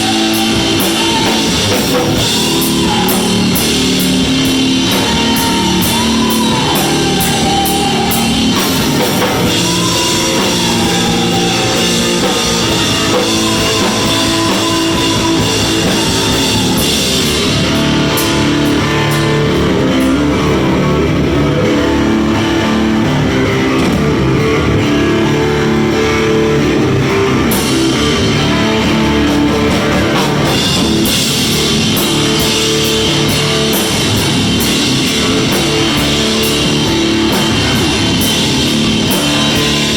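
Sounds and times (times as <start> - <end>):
cymbals riding hard: 0.0 - 23.8
guitar line bending pitch: 0.0 - 39.9
rock band playing live: 0.0 - 39.9.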